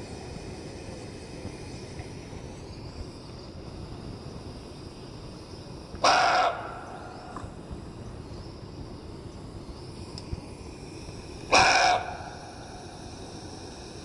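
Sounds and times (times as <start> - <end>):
barking deer bark: 6.0 - 6.8, 11.5 - 12.4.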